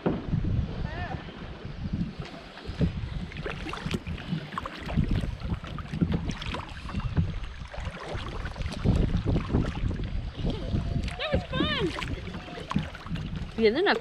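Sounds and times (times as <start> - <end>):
water splashing around kayak: 0.0 - 14.0
wind rumbling on microphone: 0.0 - 14.0.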